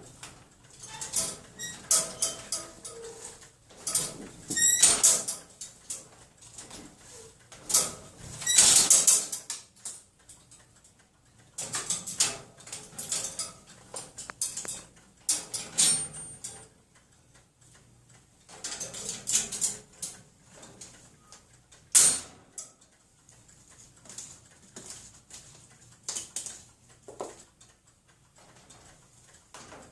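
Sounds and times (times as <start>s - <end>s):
wire cage doors rattling: 0.7s - 6.0s, 6.6s - 9.5s, 11.6s - 16.6s.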